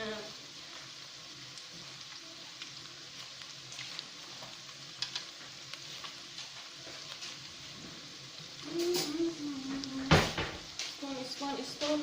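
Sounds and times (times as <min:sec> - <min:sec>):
vegetables sizzling in a pan: 0:00.0 - 0:12.0
utensil clicking against pan: 0:04.9 - 0:05.4.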